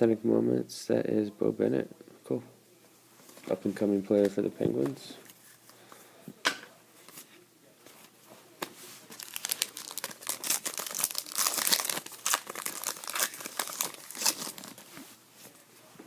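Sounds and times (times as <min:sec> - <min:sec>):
foil wrapper crinkling: 0:09.1 - 0:14.9.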